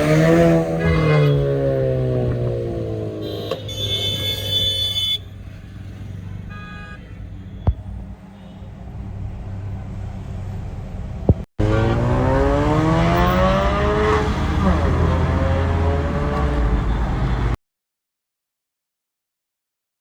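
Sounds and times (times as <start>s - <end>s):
car engine accelerating: 0.0s - 3.6s, 8.8s - 17.6s.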